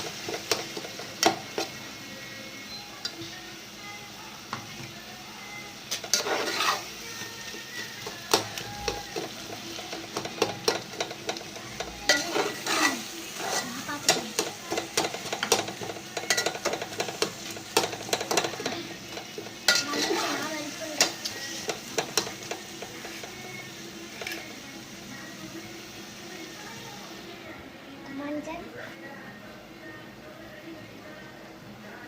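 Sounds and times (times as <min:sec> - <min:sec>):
food sizzling and frying: 0:00.0 - 0:32.0
spoon scraping a pan: 0:05.9 - 0:24.6.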